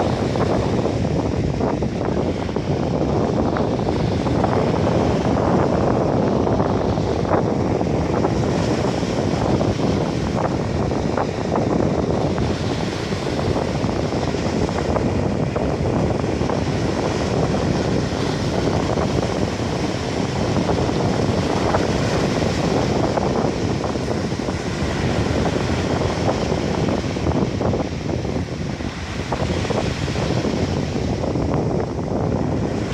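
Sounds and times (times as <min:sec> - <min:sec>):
small waves on shore: 0:00.0 - 0:32.9
wind blowing across microphone: 0:00.0 - 0:32.9.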